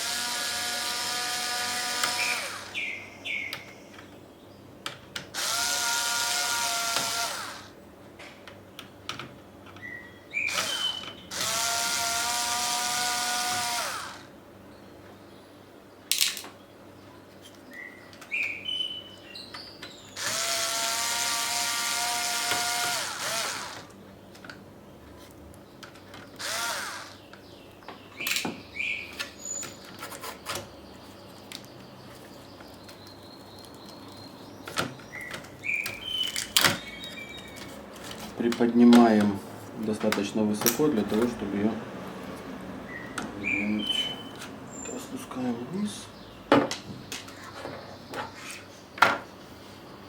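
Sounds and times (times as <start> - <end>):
electric screwdriver whining: 0.0 - 2.8, 5.4 - 7.7, 10.5 - 14.3, 20.2 - 23.9, 26.4 - 27.2.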